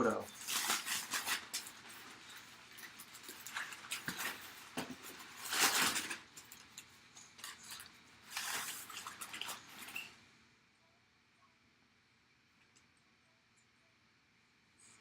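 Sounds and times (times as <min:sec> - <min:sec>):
packaging rustling and scraping: 0:00.2 - 0:10.2.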